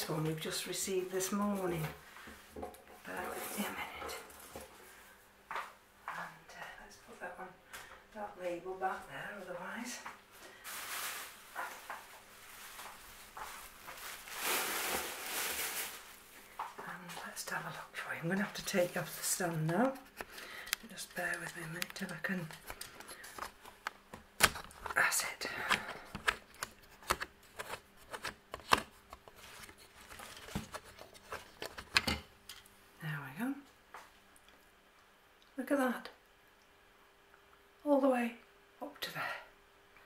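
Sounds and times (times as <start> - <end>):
packaging rustling and crackling: 10.6 - 16.3, 25.8 - 32.1.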